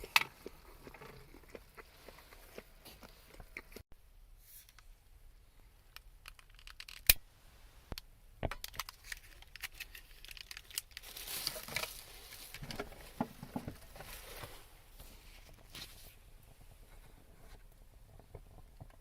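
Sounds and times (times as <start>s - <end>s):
rustling and crinkling: 0.0s - 3.8s, 8.6s - 19.0s.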